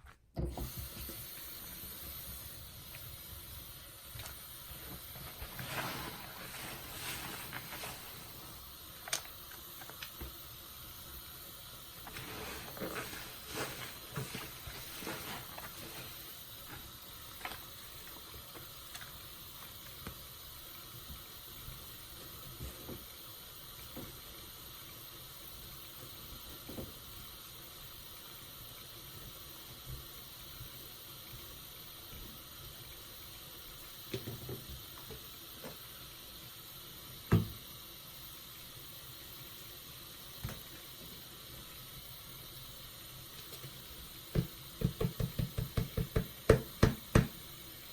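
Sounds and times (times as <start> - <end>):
small clicks and pops: 9.0 - 10.4.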